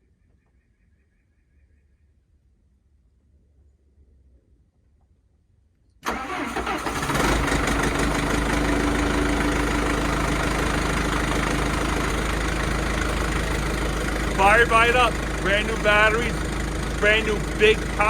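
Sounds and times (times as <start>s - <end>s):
diesel engine running: 6.1s - 18.0s
starter motor cranking: 6.1s - 18.0s.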